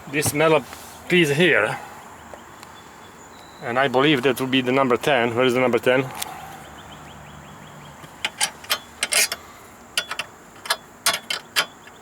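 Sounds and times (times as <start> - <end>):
hand tools clinking: 8.2 - 11.8.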